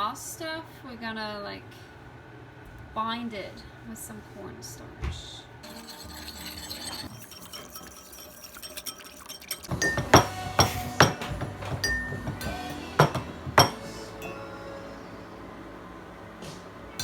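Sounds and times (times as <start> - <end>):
spoon clinking against glass: 6.1 - 14.4.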